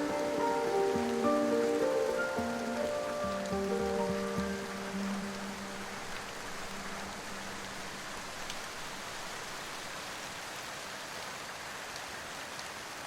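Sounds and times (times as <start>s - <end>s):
rain drop ticks: 0.0s - 10.0s
steady rain hiss: 0.0s - 13.0s.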